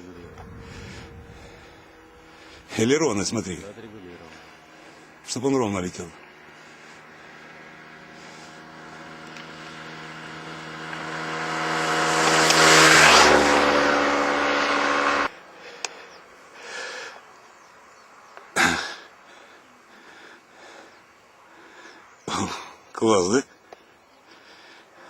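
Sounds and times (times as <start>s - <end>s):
model jet motors whining: 0.0s - 15.3s.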